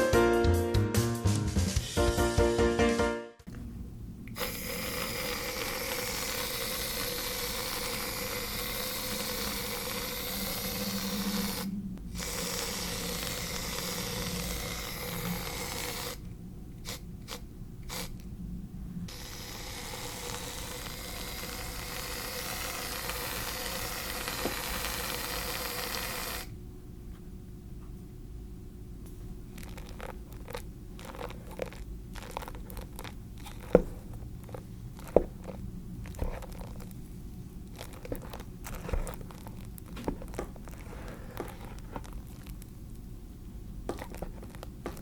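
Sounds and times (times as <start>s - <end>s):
aerosol can spraying foam: 4.4s - 16.2s, 16.8s - 18.2s, 19.1s - 26.5s.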